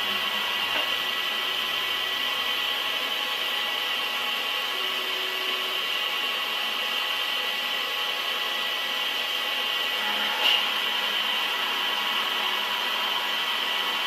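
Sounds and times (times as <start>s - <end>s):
metal lathe cutting: 0.0s - 14.0s.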